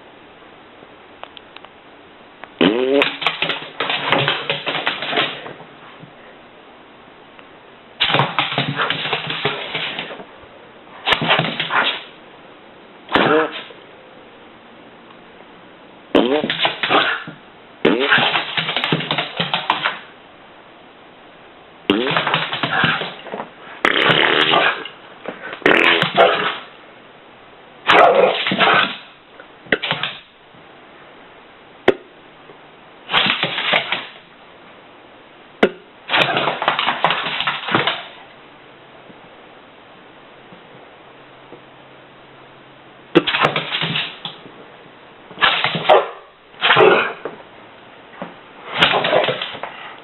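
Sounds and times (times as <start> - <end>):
animal farting: 2.6 - 5.4, 16.2 - 19.2, 21.9 - 23.2, 23.8 - 24.9, 25.6 - 26.7.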